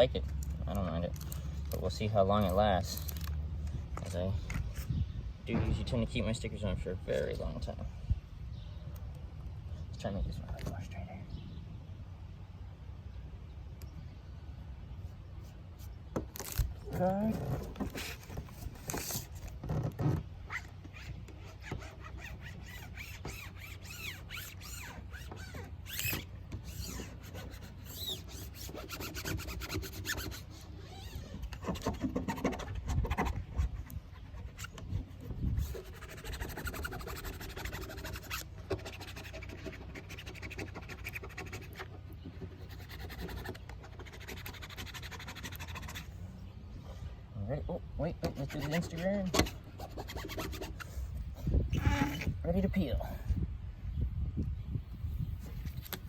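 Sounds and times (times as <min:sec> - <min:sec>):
rubbing and scraping on decal: 0:15.4 - 0:46.2, 0:48.1 - 0:52.7.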